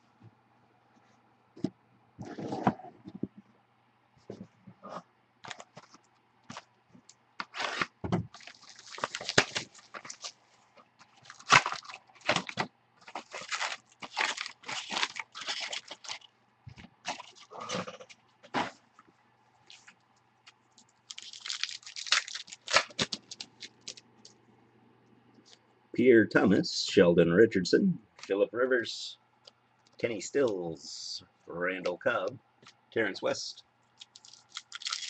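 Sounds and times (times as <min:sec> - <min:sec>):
wrappers tearing and crinkling: 0:07.4 - 0:10.4, 0:11.1 - 0:16.3, 0:17.1 - 0:17.5, 0:21.0 - 0:24.0, 0:34.0 - 0:35.0.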